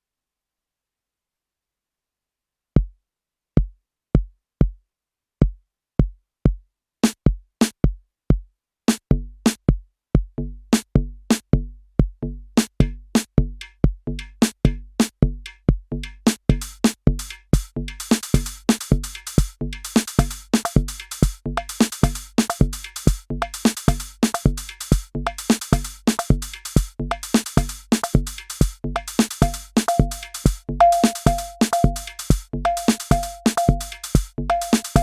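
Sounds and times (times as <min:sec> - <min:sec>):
distorted drum machine beat: 0:16.5 - 0:35.0.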